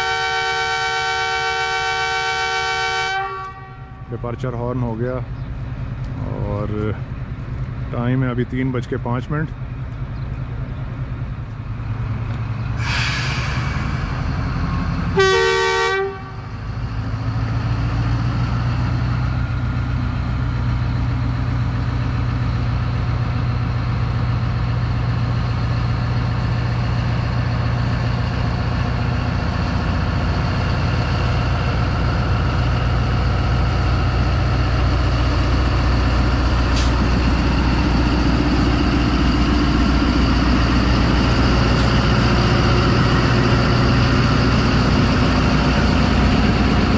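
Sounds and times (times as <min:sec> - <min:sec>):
train horn blast: 0:00.0 - 0:04.2, 0:15.1 - 0:16.5
diesel locomotive engine running: 0:00.0 - 0:46.9
air brake hiss: 0:12.8 - 0:14.2, 0:36.7 - 0:37.0.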